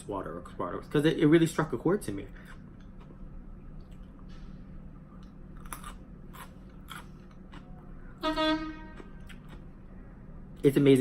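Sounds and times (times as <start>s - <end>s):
crunchy chewing: 5.1s - 8.2s, 8.9s - 9.8s.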